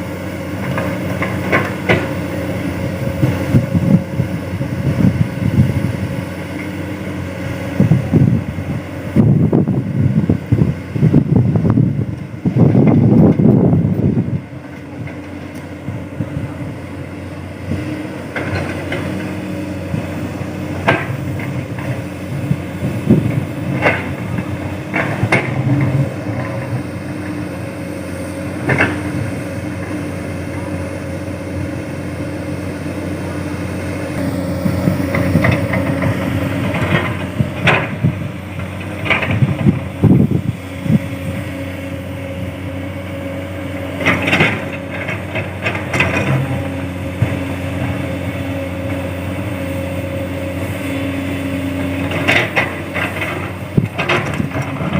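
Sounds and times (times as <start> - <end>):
excavator diesel engine running: 0.0 - 54.9
excavator bucket knocking and clanking: 0.6 - 2.3, 20.6 - 27.3, 34.6 - 40.4, 52.0 - 54.9.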